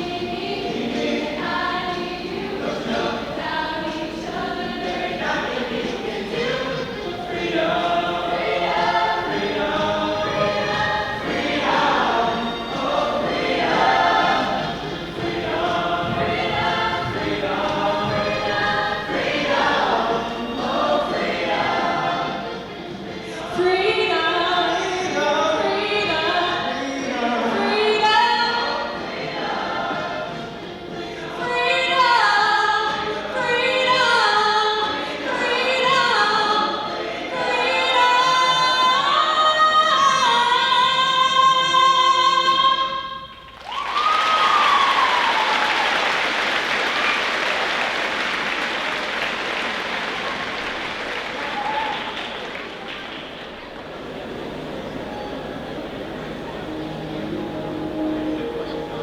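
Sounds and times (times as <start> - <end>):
choir singing: 0.0 - 43.0, 53.8 - 59.0.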